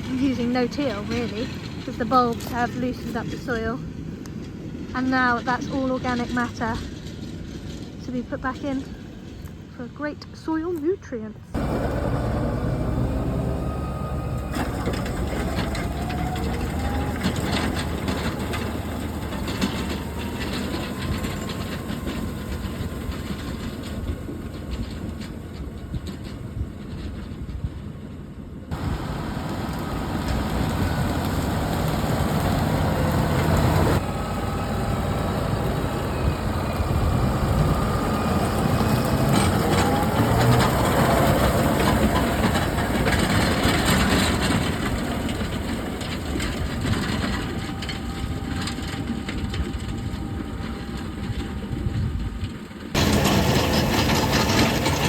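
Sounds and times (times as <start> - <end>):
tractor engine running: 0.0 - 10.1, 11.5 - 27.7, 28.7 - 55.0.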